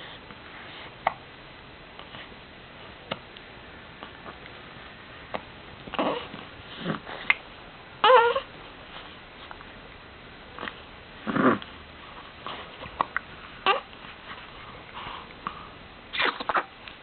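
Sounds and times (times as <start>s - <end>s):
breathing: 14.6s - 15.8s
hiccups: 16.1s - 16.7s.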